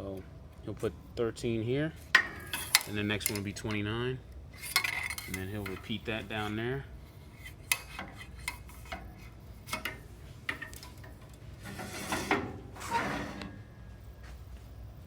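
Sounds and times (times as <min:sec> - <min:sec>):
metal scraping rub: 0:11.6 - 0:13.6.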